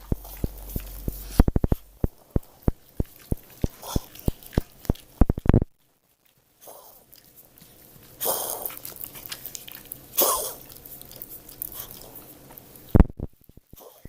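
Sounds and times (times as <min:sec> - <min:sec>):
pet coughing: 0:10.2 - 0:10.7.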